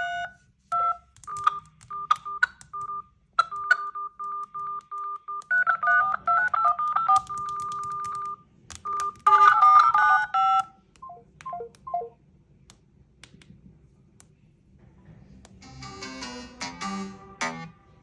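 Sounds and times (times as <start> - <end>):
touch-tone dialing beeps: 0.0 - 12.2.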